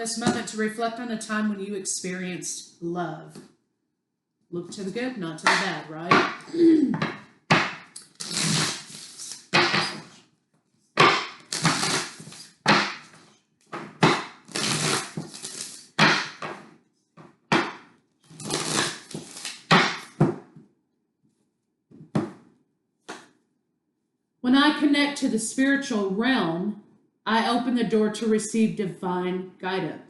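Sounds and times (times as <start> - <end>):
cards being shuffled: 11.4 - 13.2, 13.8 - 15.9, 18.3 - 20.2.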